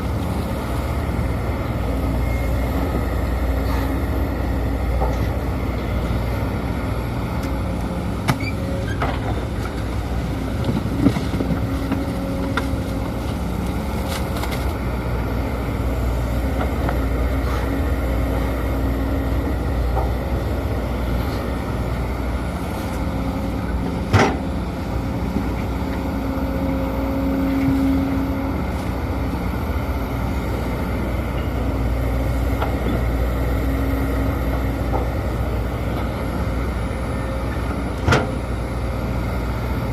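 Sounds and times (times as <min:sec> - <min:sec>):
excavator engine and hydraulics humming: 0:00.0 - 0:39.9.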